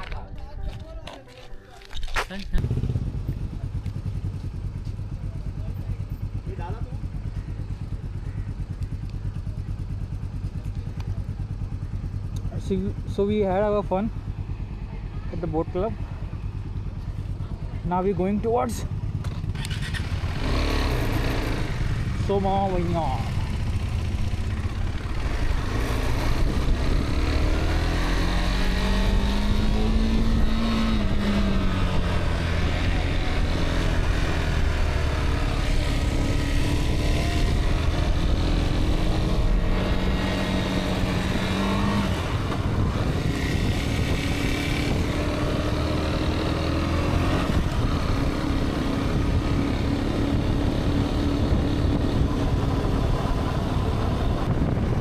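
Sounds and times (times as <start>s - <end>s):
motorcycle engine revving: 2.4s - 55.0s
wind rumble on microphone: 23.0s - 55.0s.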